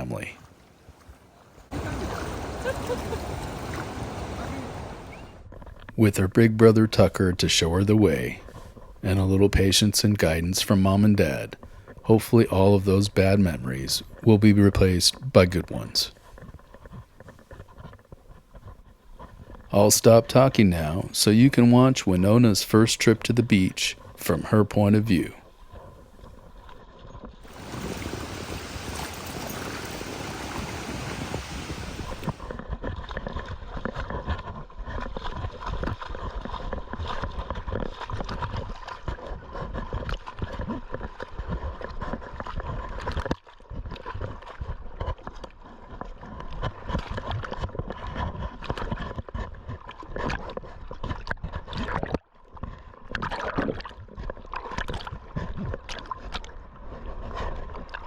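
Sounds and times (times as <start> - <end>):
rushing water-like noise: 1.7 - 5.4, 27.5 - 32.5
camera rubbing and knocking: 16.2 - 19.7.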